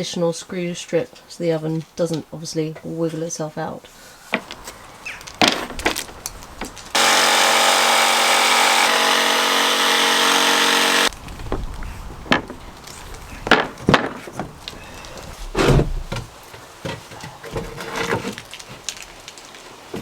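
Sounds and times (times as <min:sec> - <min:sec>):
power tool running: 0:06.9 - 0:11.1.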